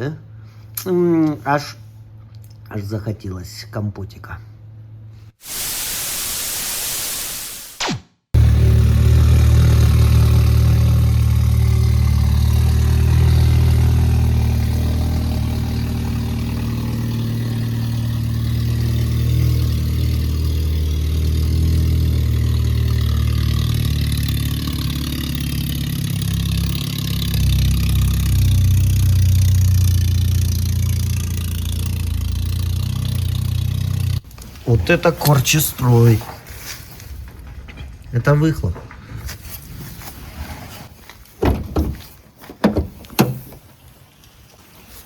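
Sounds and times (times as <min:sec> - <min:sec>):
car engine idling: 0:08.4 - 0:34.6.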